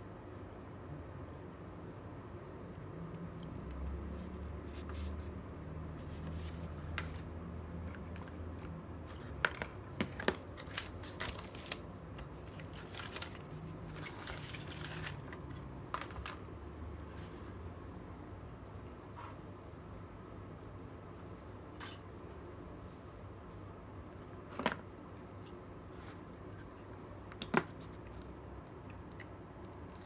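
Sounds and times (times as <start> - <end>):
packaging rustling: 6.0 - 16.4.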